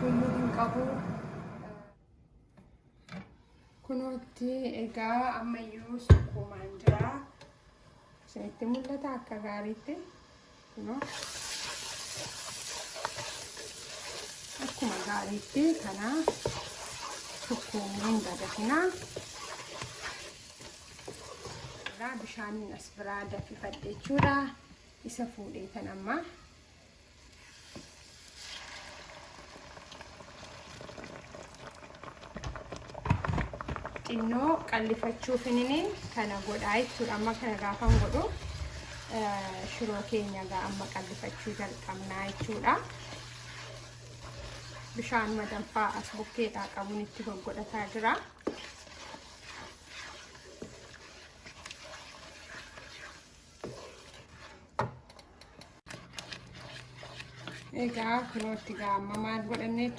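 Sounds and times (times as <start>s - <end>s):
stew hissing and bubbling: 10.8s - 22.4s, 33.6s - 59.9s
utensil stirring and scraping pot: 10.8s - 26.2s, 30.8s - 59.9s.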